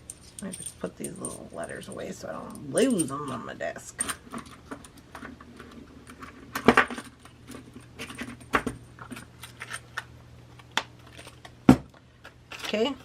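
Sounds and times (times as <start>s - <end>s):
metal pieces clinking: 0.0s - 5.0s.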